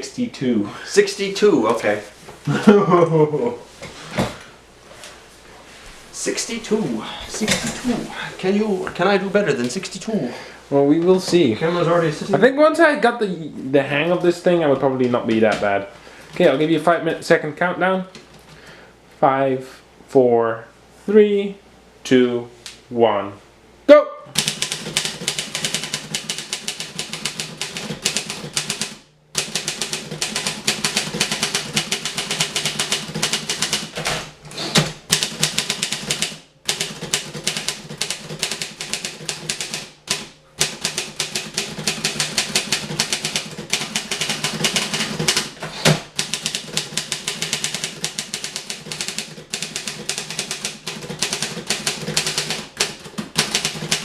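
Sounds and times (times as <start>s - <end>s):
manual typewriter typing: 7.4s - 8.0s, 24.3s - 54.0s.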